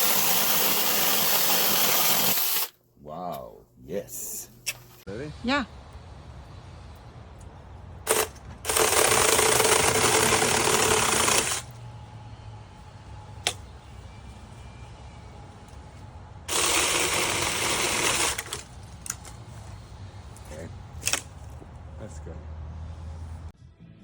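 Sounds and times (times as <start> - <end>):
mini chainsaw running: 8.1 - 11.7, 16.5 - 18.6.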